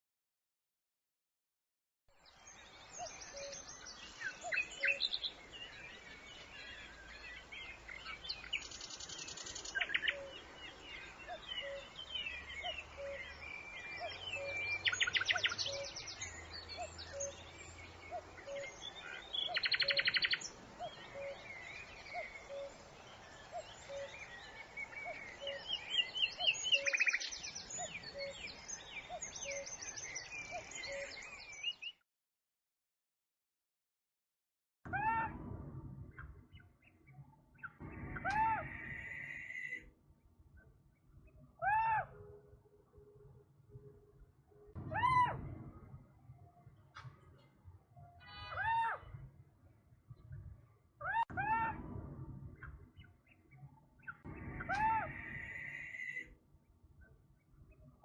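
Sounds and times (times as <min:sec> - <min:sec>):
songbirds chirping and trilling: 0:02.1 - 0:32.0, 0:34.9 - 0:58.0
faint low repeating note: 0:51.4 - 0:55.1.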